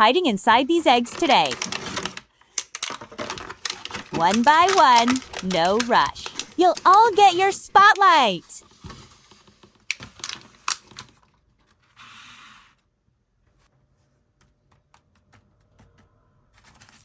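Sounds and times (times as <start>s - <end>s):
sharp clicks of plastic egg: 2.4s - 3.0s.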